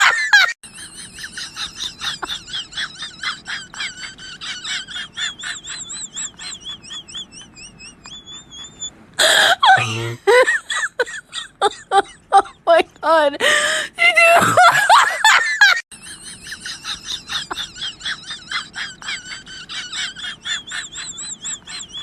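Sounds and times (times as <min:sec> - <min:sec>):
laugh-like cries: 0:00.0 - 0:22.0
squeaky chirps wobbling in pitch: 0:05.4 - 0:08.9.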